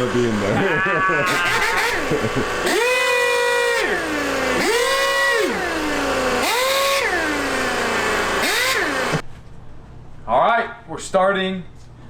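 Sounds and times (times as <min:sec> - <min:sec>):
power tool motor whine: 0:00.0 - 0:09.2.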